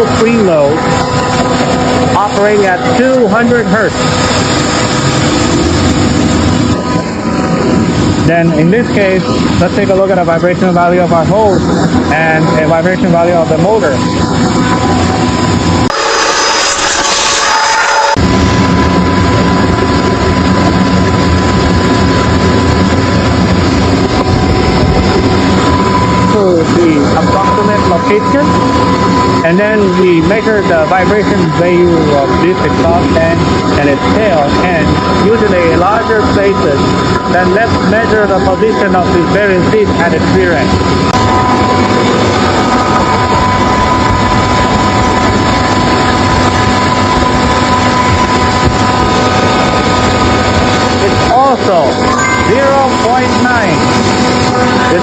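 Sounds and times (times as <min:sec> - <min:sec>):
air compressor humming: 0:00.0 - 0:55.0
constant high whine: 0:00.0 - 0:55.0
thin steady high tone: 0:51.0 - 0:55.0.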